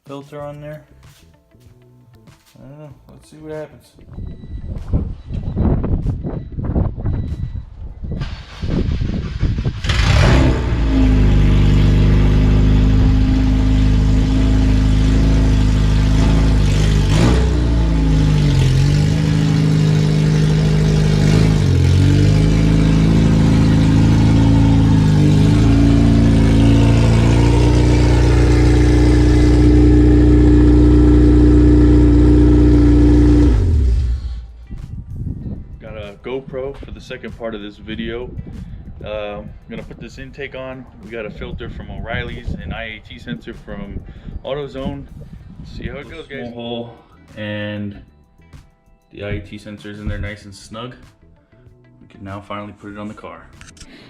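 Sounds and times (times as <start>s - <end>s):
car engine starting and running: 4.1s - 34.6s.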